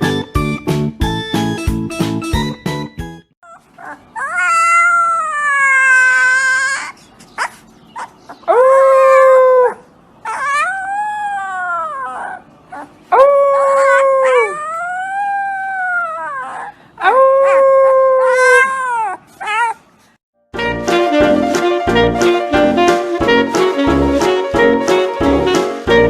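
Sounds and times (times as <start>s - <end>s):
dog howling: 3.8s - 6.9s, 8.4s - 19.7s.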